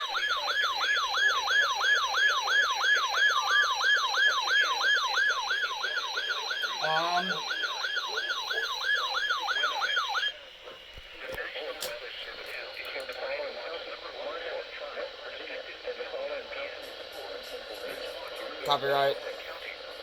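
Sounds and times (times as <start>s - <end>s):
electronic yelp siren: 0.0s - 10.4s.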